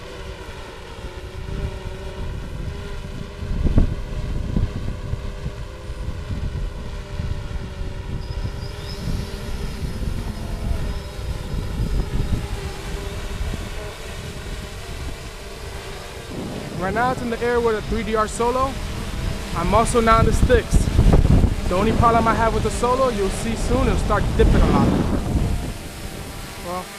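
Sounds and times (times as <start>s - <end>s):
drone propellers whining: 0.0s - 26.9s
wind gusts on microphone: 0.0s - 26.9s
faint high whine: 3.6s - 26.9s.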